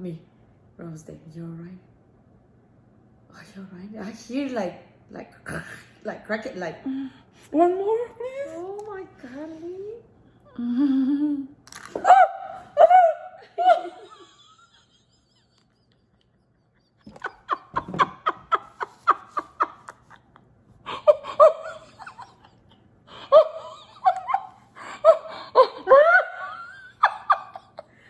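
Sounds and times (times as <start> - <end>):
woman laughing: 10.6 - 27.9.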